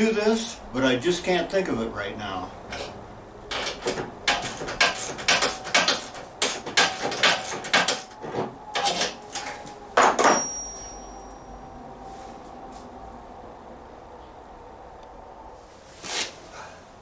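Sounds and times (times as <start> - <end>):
metal tools clanking and scraping: 2.7 - 11.4
high metallic ring: 10.0 - 11.8.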